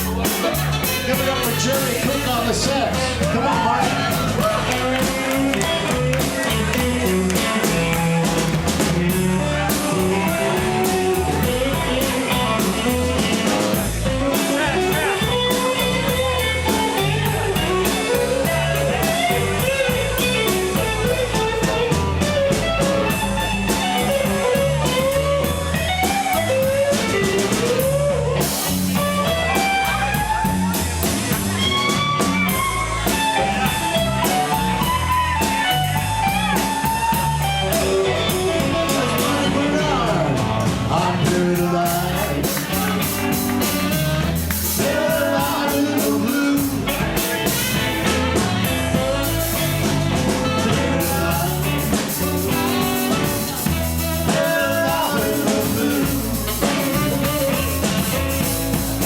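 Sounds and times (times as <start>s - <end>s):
blues band playing: 0.0s - 59.0s
electric guitar solo with bending notes: 0.2s - 40.7s.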